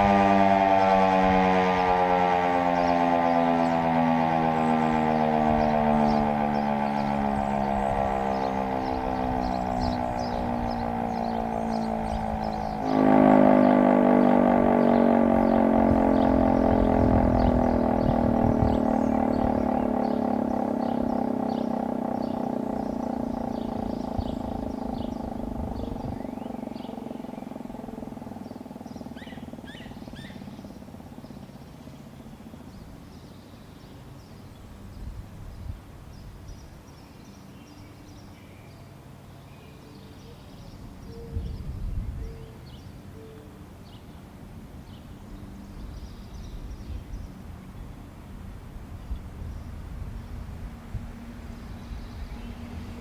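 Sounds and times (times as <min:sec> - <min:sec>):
siren winding down: 0:00.0 - 0:30.5.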